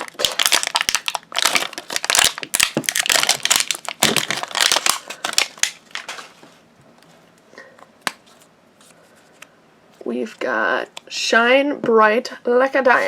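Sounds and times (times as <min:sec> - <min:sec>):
plastic wrapping crumpling: 0:00.0 - 0:06.6.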